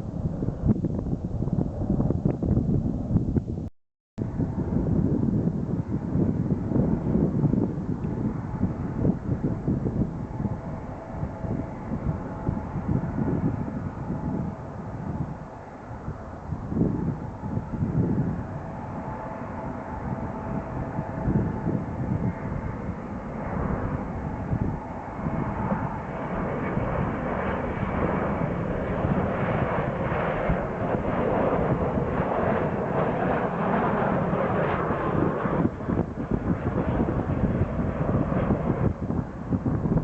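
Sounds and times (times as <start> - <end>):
airliner engines passing: 0.0 - 3.5, 4.2 - 40.0.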